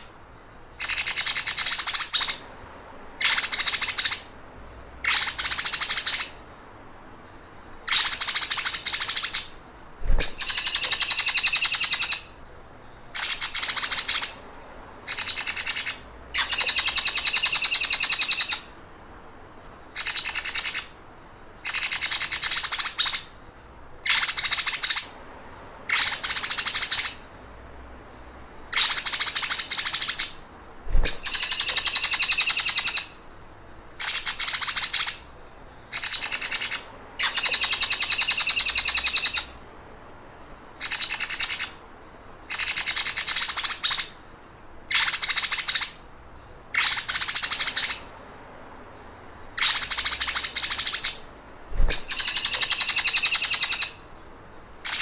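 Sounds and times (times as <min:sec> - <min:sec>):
bird rattling trill: 0:07.9 - 0:12.3, 0:28.8 - 0:33.1, 0:49.6 - 0:54.0.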